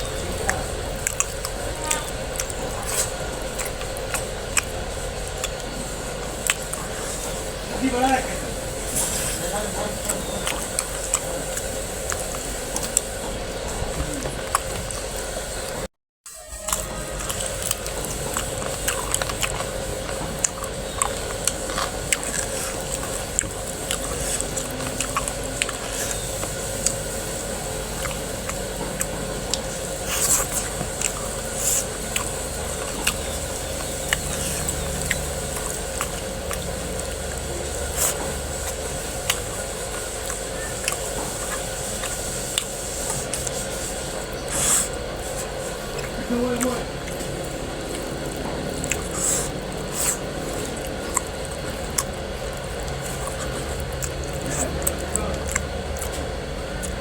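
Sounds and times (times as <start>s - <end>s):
person chewing food: 0.0s - 15.9s, 16.6s - 57.0s
steady background hum: 0.0s - 57.0s
wet mouth clicks and smacks: 27.9s - 57.0s.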